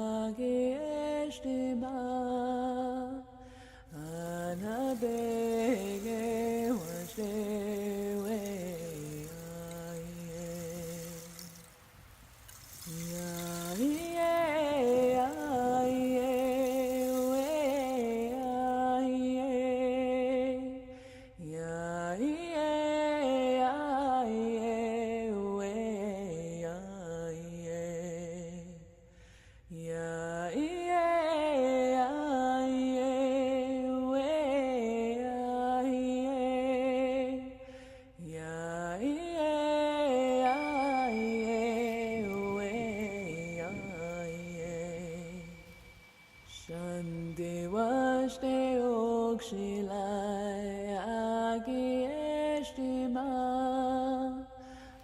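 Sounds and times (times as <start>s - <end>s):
person singing wordless chant: 0.0s - 11.8s, 12.7s - 28.8s, 38.2s - 55.0s
steady high tone: 40.2s - 48.8s.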